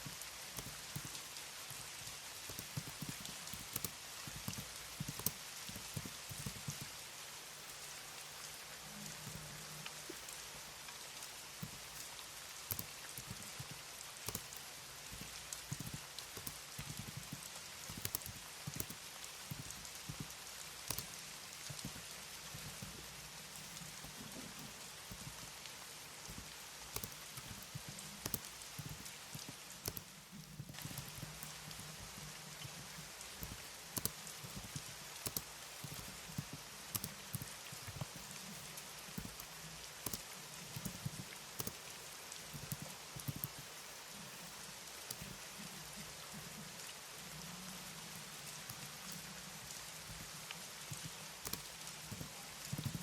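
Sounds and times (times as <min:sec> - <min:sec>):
background hiss: 0:00.0 - 0:53.0
keyboard key clicks: 0:00.5 - 0:07.0, 0:09.1 - 0:46.3, 0:48.0 - 0:53.0.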